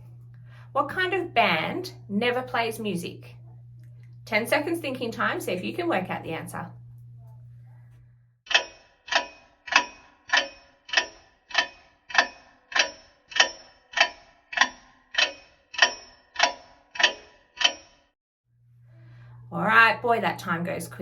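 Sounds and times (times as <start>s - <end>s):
clock ticking: 8.5s - 17.8s.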